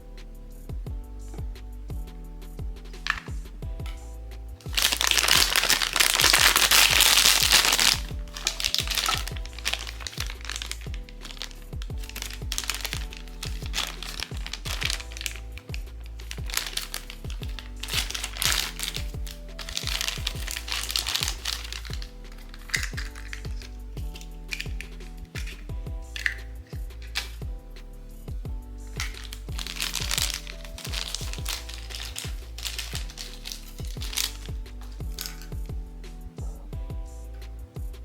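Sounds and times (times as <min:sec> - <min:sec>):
background music with steady beat: 0:00.0 - 0:38.0
packaging crinkling: 0:03.0 - 0:03.3, 0:04.6 - 0:27.4, 0:29.0 - 0:35.5
packaging rustling: 0:03.0 - 0:03.3, 0:04.6 - 0:27.4, 0:29.0 - 0:35.5.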